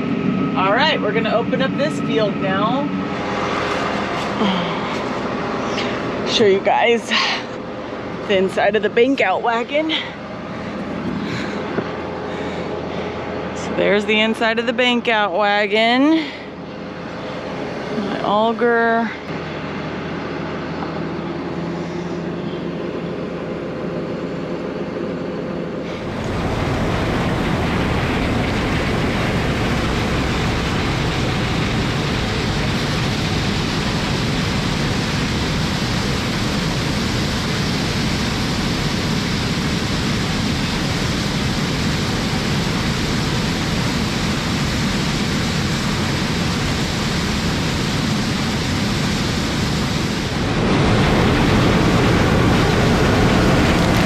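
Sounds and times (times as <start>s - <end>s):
even rushing noise: 1.7s - 6.9s, 25.9s - 54.0s
tractor engine running: 2.9s - 15.3s, 16.5s - 38.9s, 45.9s - 54.0s.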